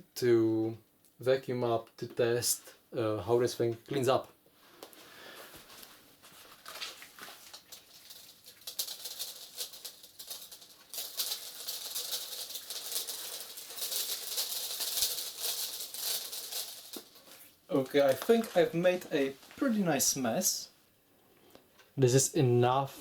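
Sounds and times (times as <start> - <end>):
tiny grains pattering on floor: 6.6 - 19.8.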